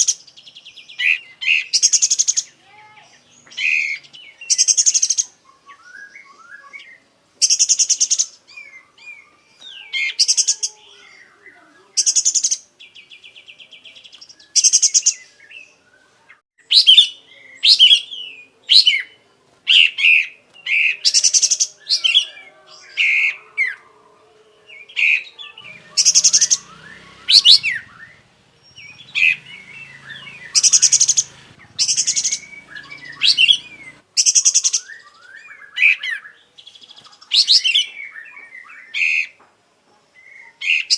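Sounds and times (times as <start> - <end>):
songbird singing buzzy rattling phrases: 0.0 - 5.9, 7.4 - 15.7, 24.6 - 35.7.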